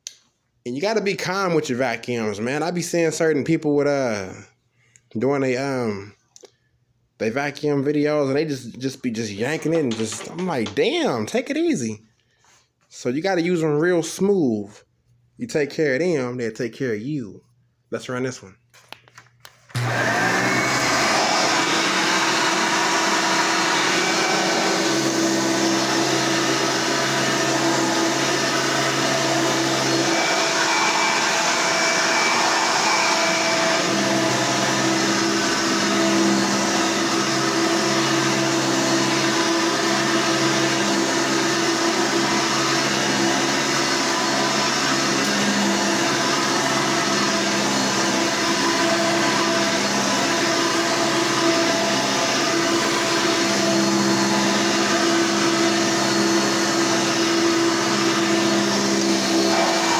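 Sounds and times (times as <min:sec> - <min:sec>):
vacuum cleaner running: 0:09.2 - 0:11.0, 0:19.7 - 0:59.9.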